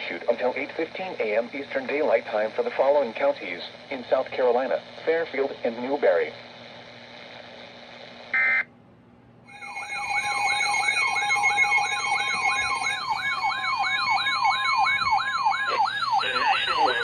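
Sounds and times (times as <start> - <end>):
electronic siren yelping: 8.4 - 8.6, 9.5 - 17.0
electronic data tones: 9.5 - 17.0.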